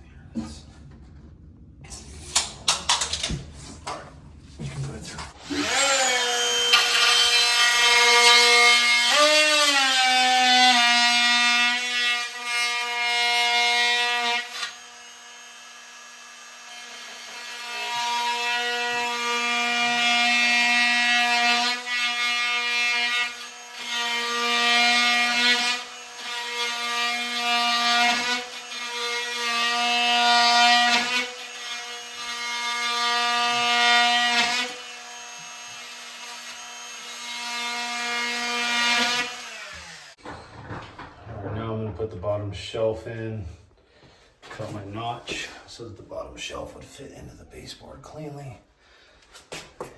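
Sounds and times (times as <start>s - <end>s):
power tool cutting wood: 5.3s - 40.3s.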